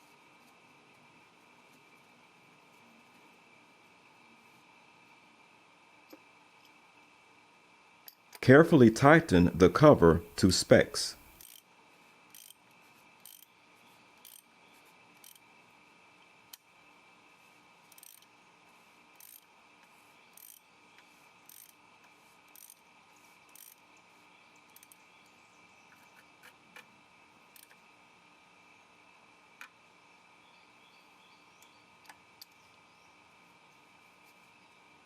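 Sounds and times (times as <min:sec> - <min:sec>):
socket wrench ratcheting clicks: 0:11.4 - 0:11.6, 0:12.3 - 0:12.6, 0:13.2 - 0:13.5, 0:14.2 - 0:14.4, 0:15.2 - 0:15.4, 0:17.9 - 0:18.3, 0:20.4 - 0:20.6, 0:22.6 - 0:22.8.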